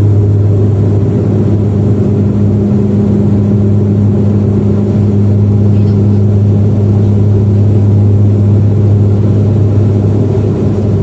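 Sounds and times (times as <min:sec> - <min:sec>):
turboprop engines droning in cabin: 0:00.0 - 0:11.0.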